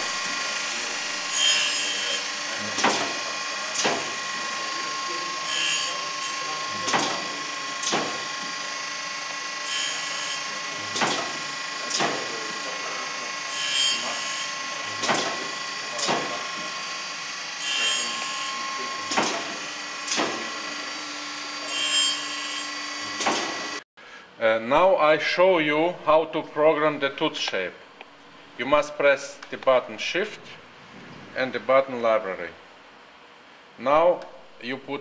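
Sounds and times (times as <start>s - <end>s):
motor hum: 0.0s - 23.8s.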